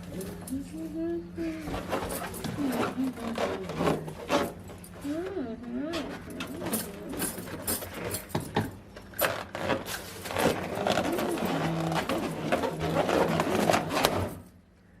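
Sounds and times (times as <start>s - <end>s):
rubber balloons squeaking: 1.6s - 4.7s, 9.2s - 14.4s.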